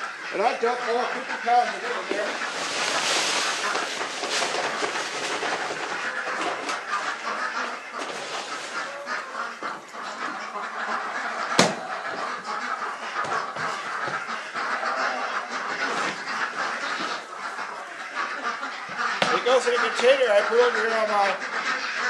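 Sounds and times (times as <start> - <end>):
ducks quacking: 0.0 - 22.0
sharp knock: 11.6 - 11.8.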